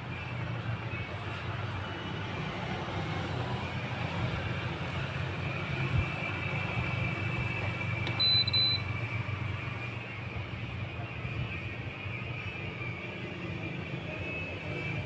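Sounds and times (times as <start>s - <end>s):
high-pitched electronic beep: 8.1s - 8.9s.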